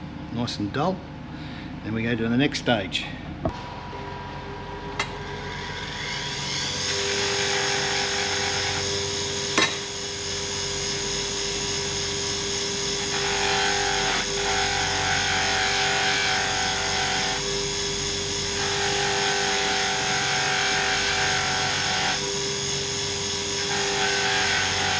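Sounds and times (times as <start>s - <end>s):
power tool hissing grind: 18.6s - 24.9s.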